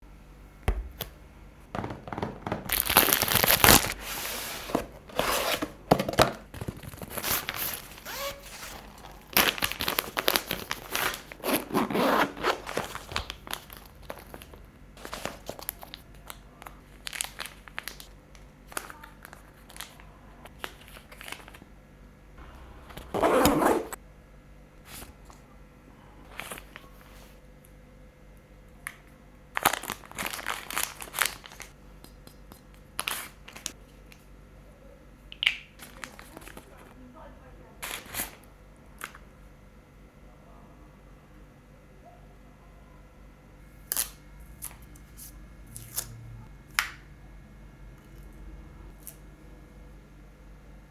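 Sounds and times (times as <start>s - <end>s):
packaging crinkling and tearing: 2.6s - 21.6s, 26.3s - 27.4s, 29.6s - 34.0s, 35.8s - 36.9s, 37.8s - 39.2s, 43.8s - 46.2s.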